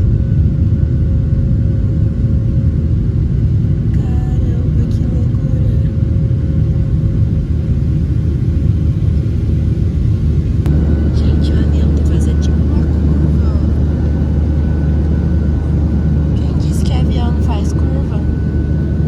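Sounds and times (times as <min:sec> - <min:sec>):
airliner engine rumble: 0:00.0 - 0:19.0
constant hum: 0:00.0 - 0:19.0.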